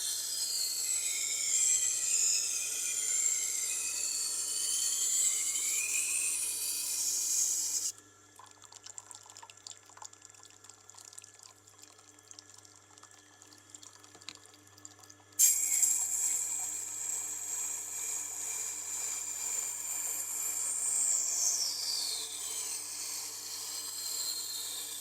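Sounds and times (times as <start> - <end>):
knife grinding on sharpening stone: 15.4 - 25.0.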